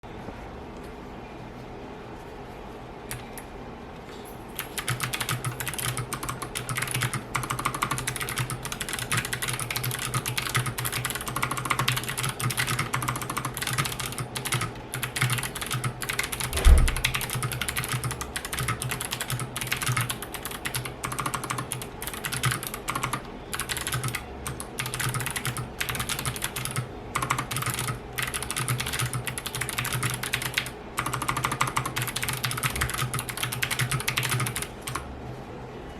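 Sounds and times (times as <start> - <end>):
clicky keyboard typing: 3.1 - 3.5, 4.6 - 35.0
low thump: 16.6 - 17.0.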